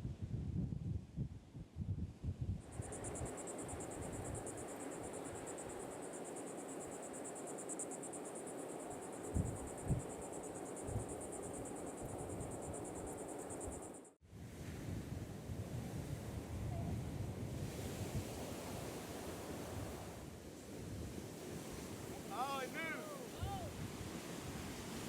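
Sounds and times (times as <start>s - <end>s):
insects trilling: 2.7s - 14.1s.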